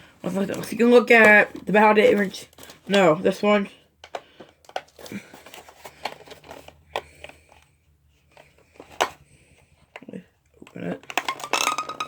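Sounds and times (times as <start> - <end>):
packaging rustling: 0.0 - 3.1, 4.2 - 7.7
plastic toys clicking and tapping: 4.0 - 7.6, 9.9 - 12.0.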